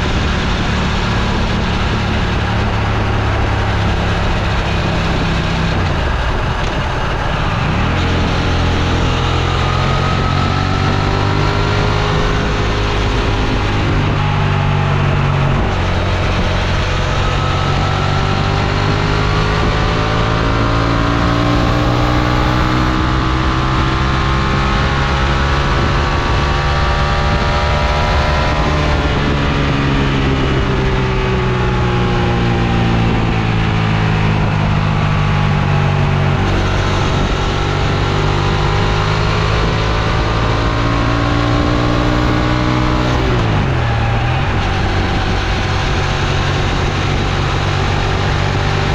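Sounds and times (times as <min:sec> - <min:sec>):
motorcycle engine running: 0:00.0 - 0:48.9.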